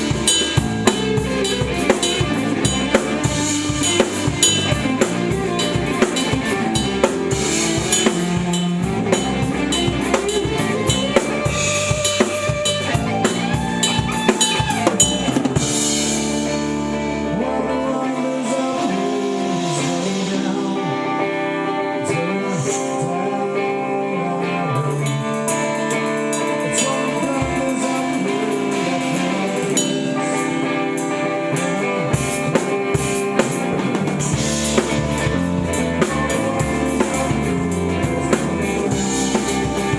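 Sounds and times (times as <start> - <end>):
drum kit busy beat: 0.0 - 17.0, 25.0 - 39.9.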